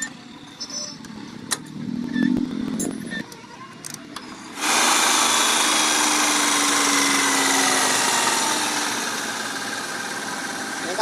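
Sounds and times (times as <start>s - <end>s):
faint low hum dropping in pitch: 1.3s - 3.3s
loud steady machine noise: 4.2s - 11.0s.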